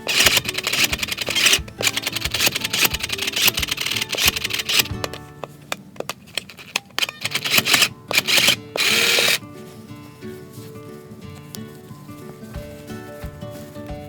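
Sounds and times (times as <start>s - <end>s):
toy sewing machine clattering: 0.0s - 9.4s
background music: 0.0s - 14.0s.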